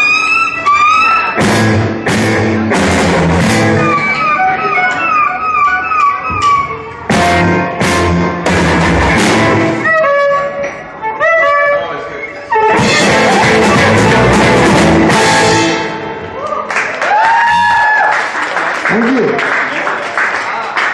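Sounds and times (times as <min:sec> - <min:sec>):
band music with guitar and drums: 0:00.0 - 0:16.4.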